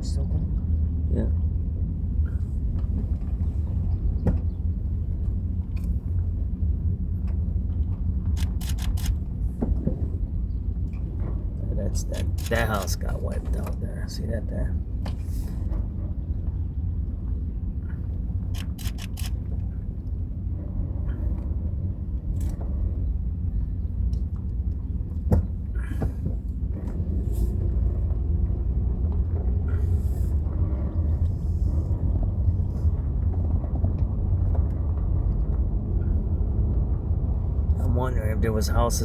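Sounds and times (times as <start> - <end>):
car cabin rumble: 0.0 - 39.0
light clicks: 8.3 - 9.2, 18.5 - 19.6.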